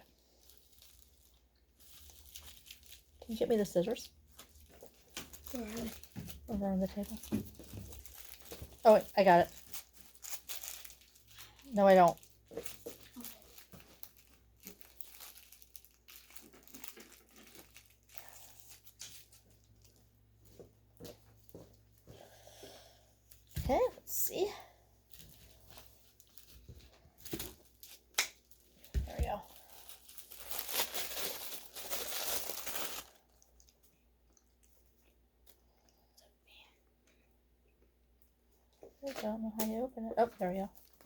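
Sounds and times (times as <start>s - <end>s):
packaging wrap crinkling and tearing: 0.1s - 20.2s, 25.1s - 33.9s.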